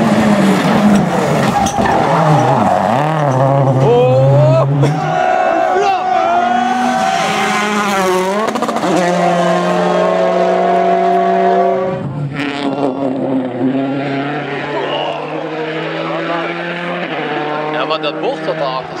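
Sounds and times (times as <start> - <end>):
rally car engine revving: 0.0 - 19.0.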